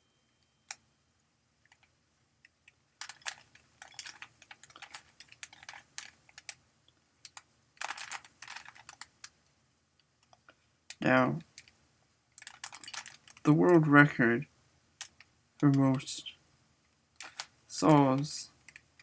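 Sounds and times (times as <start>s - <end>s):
puzzle cube plastic clicks: 2.7s - 6.6s, 7.2s - 9.4s, 10.2s - 13.8s, 15.0s - 16.1s, 17.2s - 19.0s.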